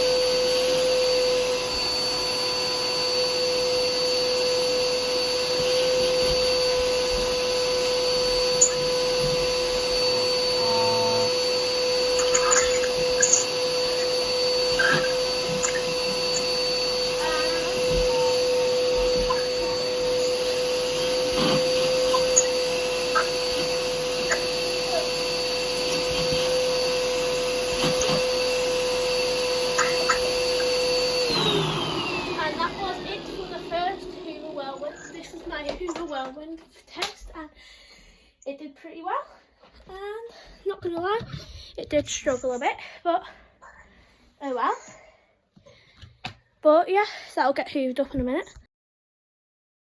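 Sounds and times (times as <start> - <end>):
vacuum cleaner whining: 0.0 - 36.7.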